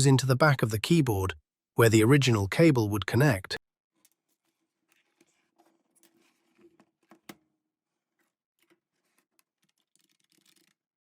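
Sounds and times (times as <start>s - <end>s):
small parts and paper handled: 4.0s - 10.9s.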